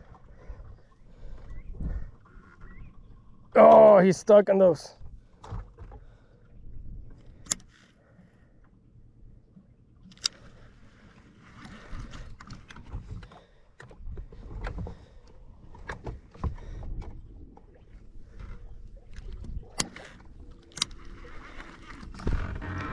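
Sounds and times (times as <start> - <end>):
low rumbling: 16.6 - 22.9.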